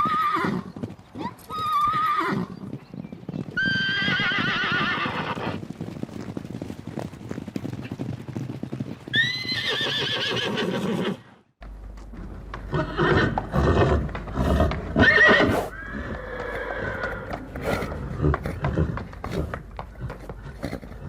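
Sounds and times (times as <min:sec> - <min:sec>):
horse whinnying: 0:00.0 - 0:00.7, 0:01.5 - 0:02.7, 0:03.6 - 0:05.6, 0:09.1 - 0:11.3, 0:12.7 - 0:21.0
horse snorting: 0:12.6 - 0:21.0.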